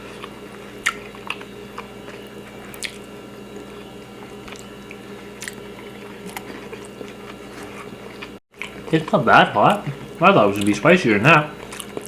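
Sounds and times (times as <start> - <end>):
wet chewing and smacking: 0.0 - 10.8, 11.5 - 12.0
lip smacks: 0.2 - 3.1.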